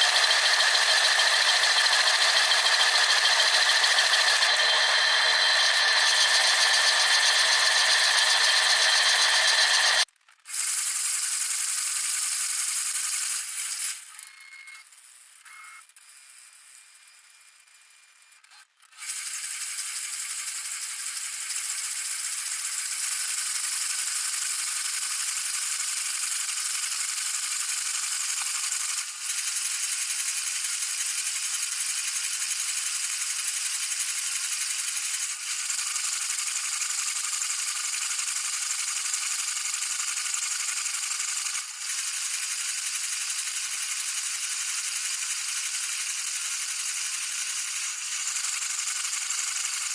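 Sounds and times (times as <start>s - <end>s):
dishwasher water jets spattering: 0.0s - 10.0s.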